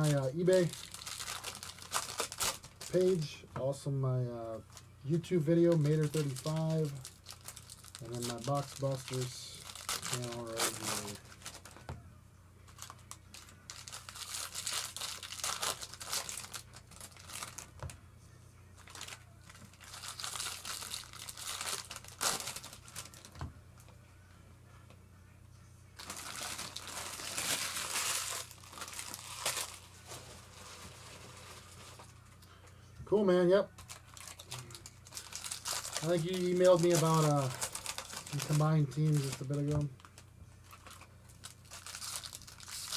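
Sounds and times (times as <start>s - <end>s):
card pack wrappers tearing and crinkling: 0.0s - 12.0s, 12.7s - 17.9s, 18.8s - 23.5s, 26.0s - 32.4s, 33.7s - 42.9s.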